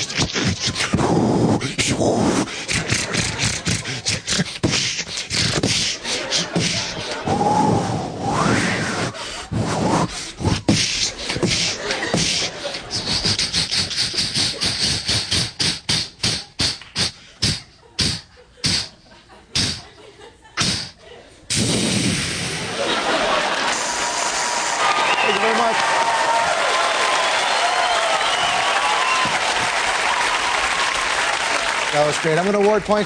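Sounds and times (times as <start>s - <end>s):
man imitating steam train chuffing: 1.6s - 7.1s, 10.4s - 19.0s, 19.6s - 19.9s, 20.6s - 21.0s.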